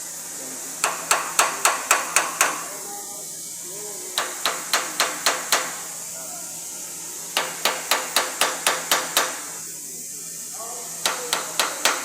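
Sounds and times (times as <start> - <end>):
hammer knocking on metal: 0.8 - 2.6, 4.2 - 5.8, 7.4 - 9.4, 11.0 - 12.0.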